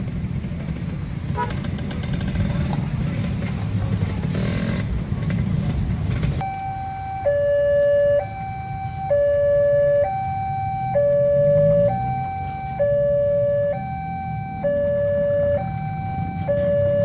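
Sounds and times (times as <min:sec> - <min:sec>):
road traffic rumble: 0:00.0 - 0:17.0
level crossing two-tone alarm: 0:06.4 - 0:17.0.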